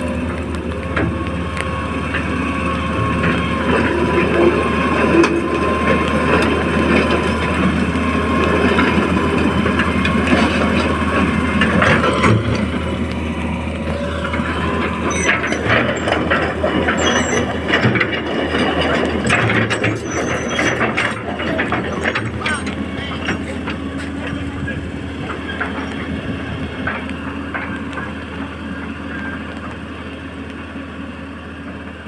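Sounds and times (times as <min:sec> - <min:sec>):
high whine: 0:00.0 - 0:30.1
excavator engine humming: 0:00.0 - 0:32.0
clanks and knocks: 0:08.6 - 0:13.2, 0:14.0 - 0:28.1.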